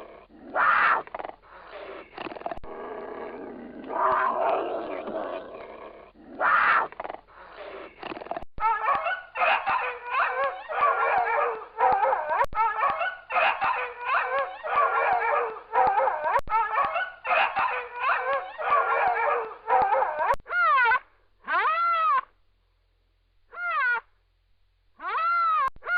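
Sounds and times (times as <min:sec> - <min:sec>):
dog barking and howling: 0:06.3 - 0:06.9, 0:08.6 - 0:22.2, 0:25.0 - 0:25.9.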